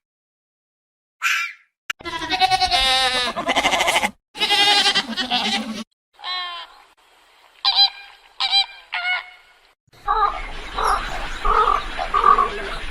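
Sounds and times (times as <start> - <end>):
goat bleating: 2.0 - 6.7.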